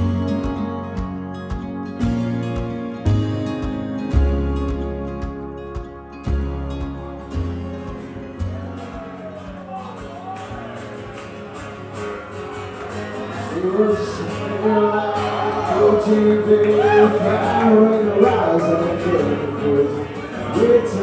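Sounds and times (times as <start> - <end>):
soft instrumental music with beat: 0.0 - 11.3.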